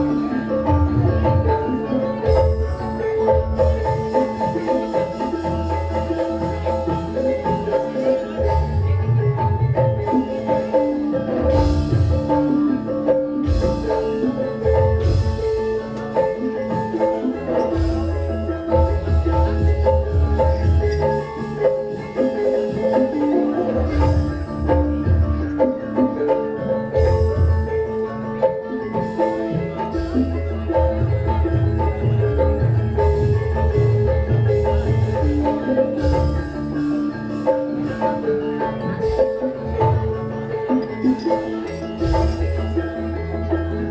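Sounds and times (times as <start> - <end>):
metallophones ringing melody: 26.8 - 43.9.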